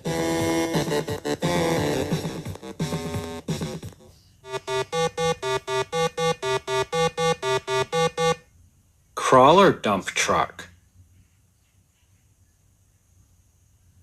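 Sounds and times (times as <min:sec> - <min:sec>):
synthesizer repeated notes: 0:00.0 - 0:08.4.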